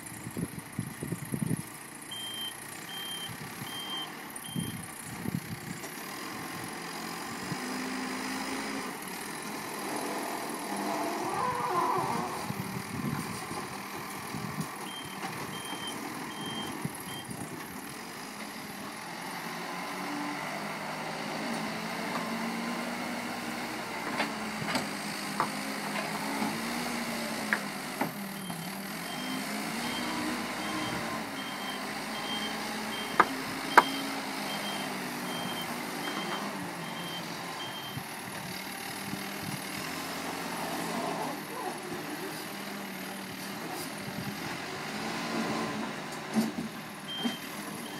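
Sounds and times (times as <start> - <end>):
engine running: 0.0 - 47.9
reversing alarm beeping: 2.1 - 4.9, 14.9 - 17.3, 28.4 - 38.0.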